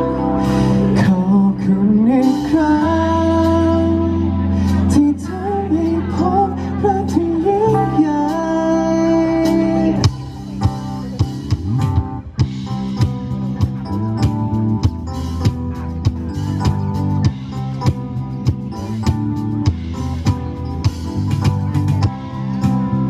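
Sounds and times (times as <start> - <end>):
man singing pop ballad: 0.0 - 10.4
band guitar and drums: 0.0 - 23.0.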